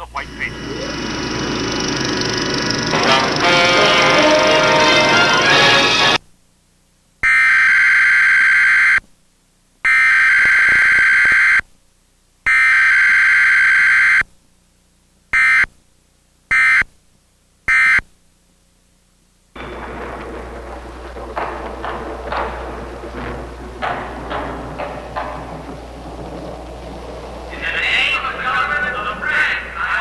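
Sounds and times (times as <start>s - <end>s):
music: 2.7s - 6.2s, 19.6s - 30.0s
emergency alert data tone bursts: 7.2s - 9.0s, 9.8s - 11.6s, 12.5s - 14.3s, 15.3s - 15.7s, 16.5s - 16.9s, 17.7s - 18.1s.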